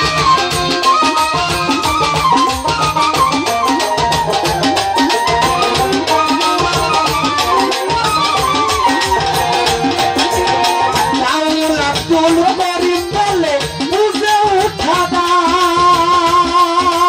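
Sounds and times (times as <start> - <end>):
wavering folk melody: 0.0 - 16.0
fast dense percussion: 0.0 - 17.0.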